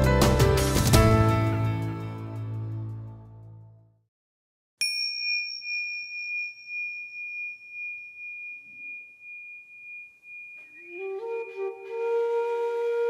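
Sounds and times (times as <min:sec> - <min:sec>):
music: 0:00.0 - 0:04.0, 0:10.6 - 0:13.0
small bell ringing: 0:04.8 - 0:11.6.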